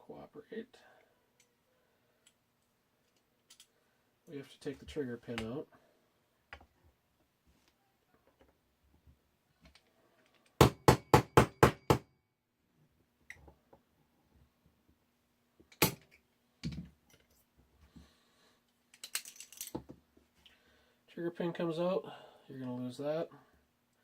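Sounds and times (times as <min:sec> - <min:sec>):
hammer tapping a metal punch: 0:10.6 - 0:12.0.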